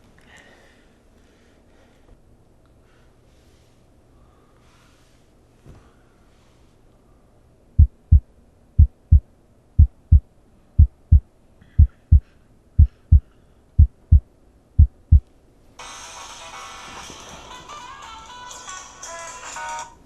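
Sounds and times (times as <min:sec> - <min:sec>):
heartbeat thumps: 0:07.8 - 0:15.2
music: 0:15.8 - 0:20.0.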